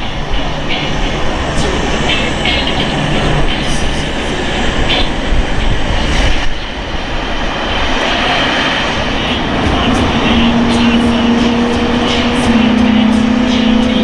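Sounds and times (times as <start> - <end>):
low steady tone: 0.0 - 6.7
jet engines roaring: 0.0 - 14.0.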